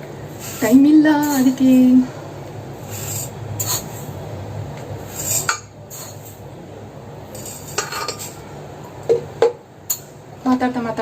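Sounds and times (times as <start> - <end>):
kitchen utensils clinking: 0.5 - 2.0, 7.3 - 8.5.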